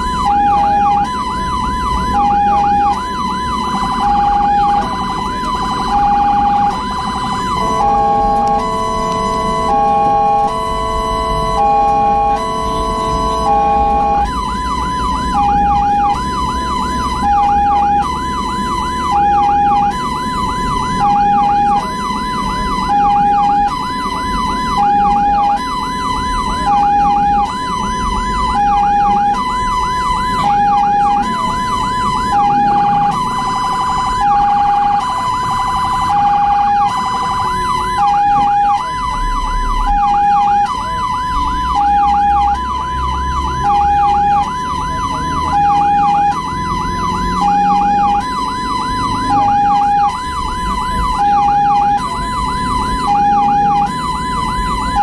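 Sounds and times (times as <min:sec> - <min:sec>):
ambulance siren hi-lo tone: 0:00.0 - 0:55.0
siren yelp: 0:00.0 - 0:55.0
vehicle engine and road rumble: 0:00.0 - 0:55.0.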